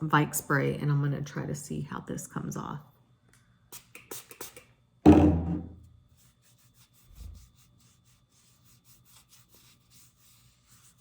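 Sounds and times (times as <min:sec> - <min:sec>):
soft low knock: 0:05.1 - 0:05.8
rubbing strokes on skin: 0:06.1 - 0:11.0.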